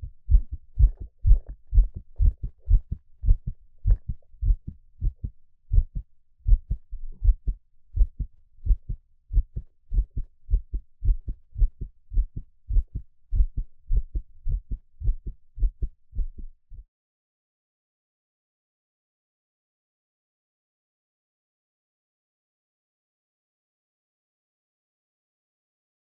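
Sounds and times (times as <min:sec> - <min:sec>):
heartbeat low thuds: 0:00.0 - 0:16.9.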